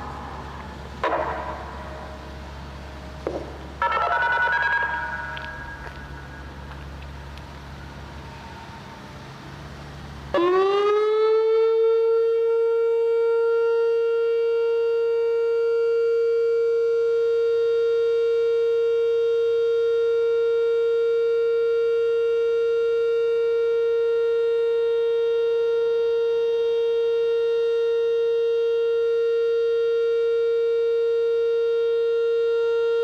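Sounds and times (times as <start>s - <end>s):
low hum: 0.0s - 8.9s
outdoor warning siren: 0.0s - 33.0s.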